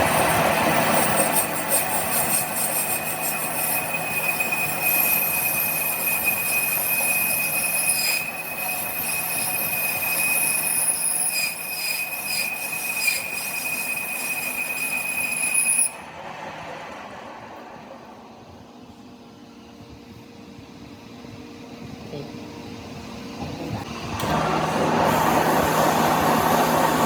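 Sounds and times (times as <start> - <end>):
machine squealing on metal: 0.0 - 16.0.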